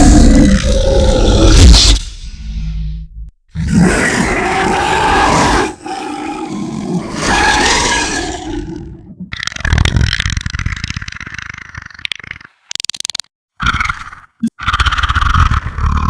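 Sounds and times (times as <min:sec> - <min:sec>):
creature growling: 0:00.0 - 0:02.0, 0:03.6 - 0:12.5
creature roaring: 0:00.0 - 0:02.0, 0:03.6 - 0:10.2
rattling clicking growl: 0:07.1 - 0:13.2.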